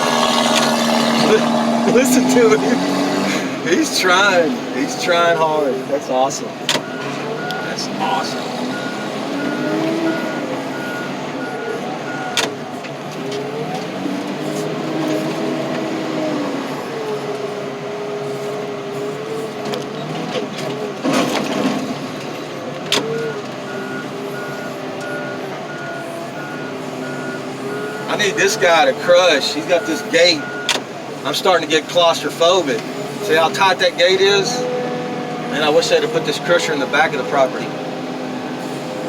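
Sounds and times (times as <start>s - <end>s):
car engine revving hard: 0.0s - 39.0s
reversing alarm beeping: 6.8s - 12.4s, 23.2s - 30.8s.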